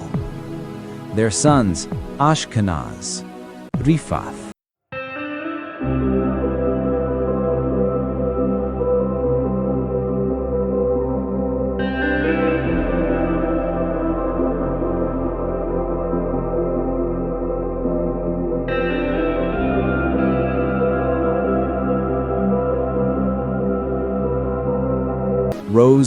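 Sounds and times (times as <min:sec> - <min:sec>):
synthesizer pads: 0:00.0 - 0:04.5, 0:05.8 - 0:26.0
echoing plucked guitar: 0:04.9 - 0:25.7
deep bass drone: 0:06.1 - 0:25.7.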